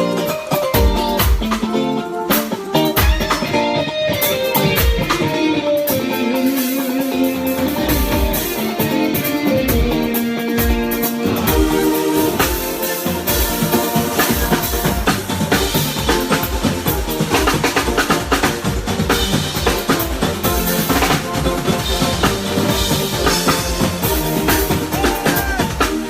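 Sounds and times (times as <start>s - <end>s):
drum kit kick beat: 0.0s - 26.0s
electric guitar: 0.0s - 26.0s
bass: 7.2s - 26.0s.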